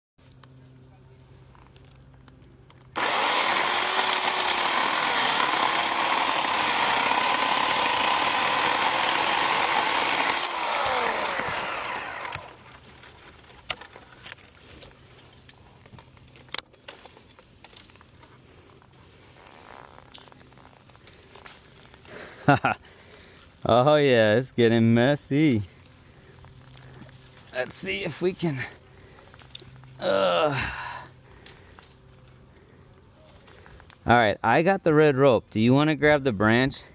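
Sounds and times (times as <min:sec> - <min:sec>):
chainsaw running at high revs: 0:03.0 - 0:12.8.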